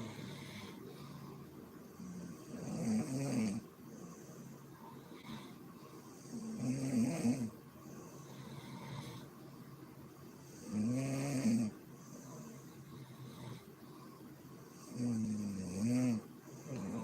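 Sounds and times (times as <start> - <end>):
woman snoring: 0.0 - 1.2, 2.0 - 4.3, 5.1 - 7.6, 10.6 - 13.7, 14.8 - 17.0
quiet breathing: 0.0 - 17.0.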